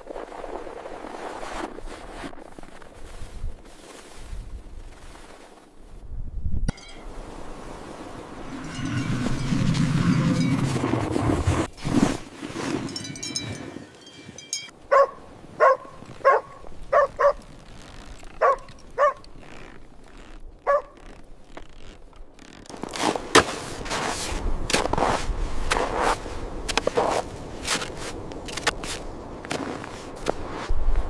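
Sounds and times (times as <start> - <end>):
crunching and scraping: 0.0 - 5.7, 8.4 - 14.8, 15.9 - 30.7
dog barking: 14.9 - 17.4, 18.4 - 19.2, 20.6 - 21.0.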